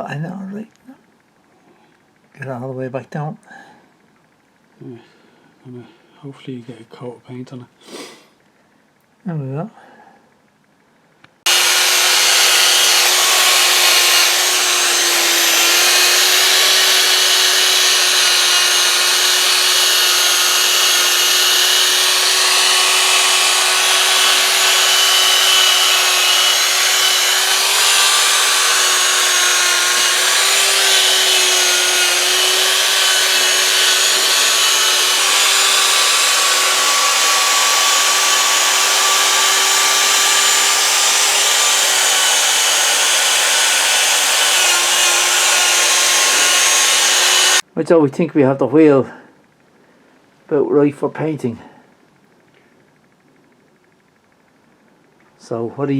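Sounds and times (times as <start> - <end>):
electric power tool grinding metal: 11.4 - 47.6.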